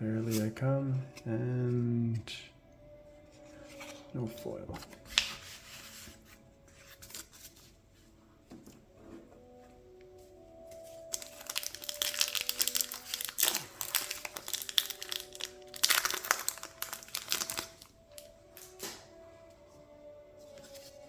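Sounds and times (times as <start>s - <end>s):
foil wrapper crinkling and tearing: 11.0s - 18.9s.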